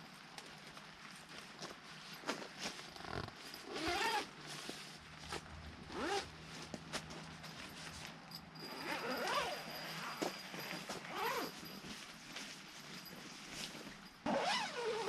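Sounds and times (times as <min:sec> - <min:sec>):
zipper pulled: 0:02.6 - 0:06.4, 0:08.6 - 0:11.9, 0:13.6 - 0:15.0.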